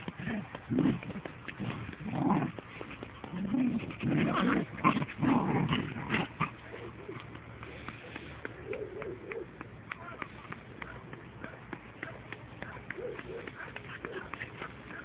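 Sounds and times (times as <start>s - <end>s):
puppies growling: 0.0s - 7.3s.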